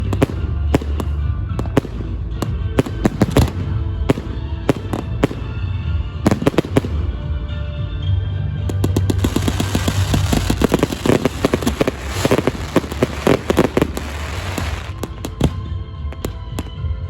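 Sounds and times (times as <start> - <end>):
music: 0.0 - 17.0
fireworks bangs: 8.7 - 16.8.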